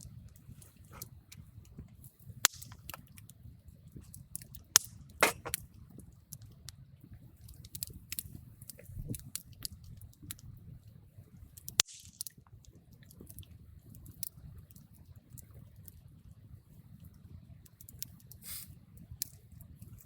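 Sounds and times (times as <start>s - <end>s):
campfire crackling and popping: 0.0s - 20.0s
low rumble of flame: 0.0s - 20.0s
brief fire hiss: 5.2s - 5.6s, 18.4s - 18.8s.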